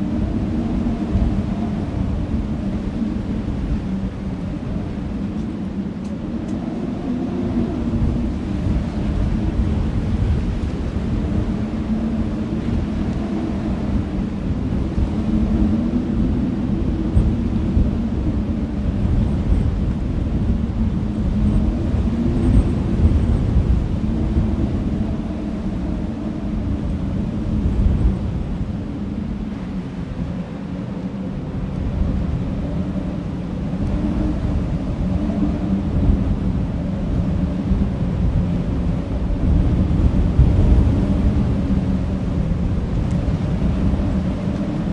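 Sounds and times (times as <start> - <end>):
wind buffeting microphone: 0.0 - 44.9.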